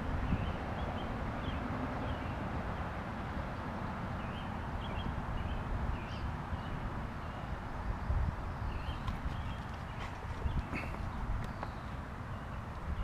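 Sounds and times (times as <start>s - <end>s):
small birds chirping: 8.4s - 13.0s.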